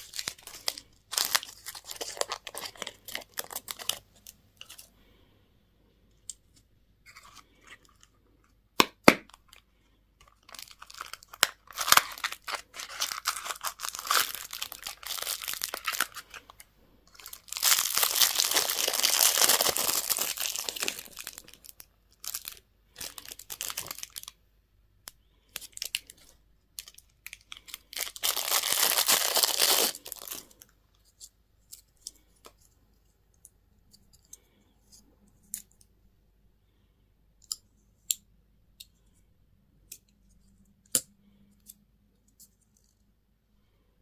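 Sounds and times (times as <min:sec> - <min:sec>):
wrapping crinkled and torn: 0:00.0 - 0:04.9, 0:10.2 - 0:24.3, 0:25.5 - 0:30.7.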